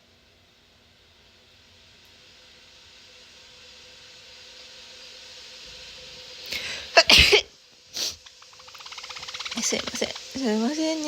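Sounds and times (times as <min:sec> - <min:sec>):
burst of breath: 0:06.5 - 0:07.0
person sneezing: 0:06.9 - 0:08.2.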